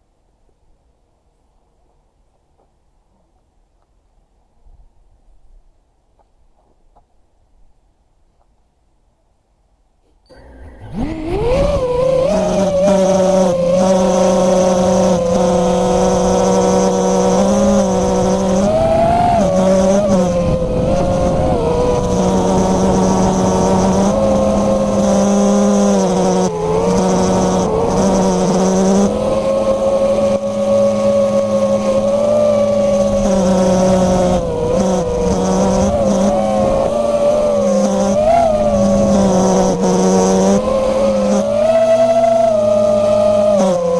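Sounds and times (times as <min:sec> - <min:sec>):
drone motors whining: 0:10.3 - 0:43.9
steady low hum: 0:10.3 - 0:43.9.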